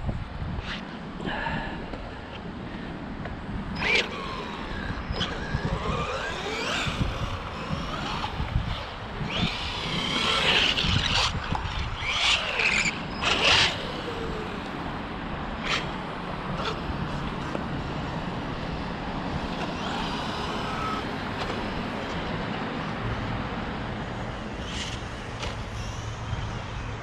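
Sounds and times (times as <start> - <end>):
electric motor whining: 3.7 - 22.4.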